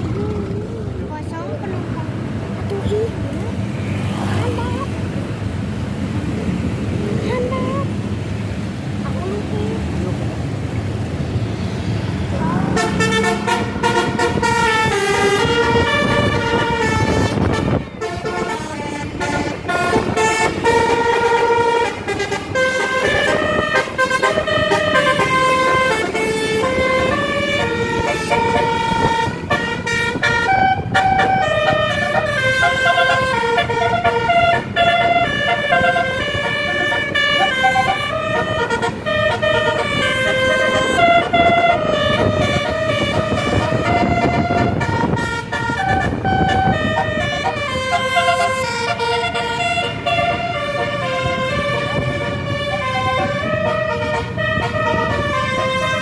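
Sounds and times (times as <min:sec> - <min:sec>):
multi-tone air horn melody: 0:12.6 - 0:56.0.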